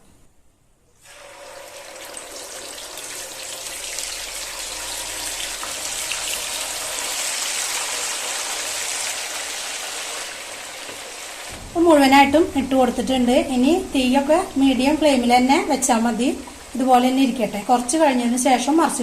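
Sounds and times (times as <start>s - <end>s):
chicken sizzling in hot oil: 1.0s - 12.1s.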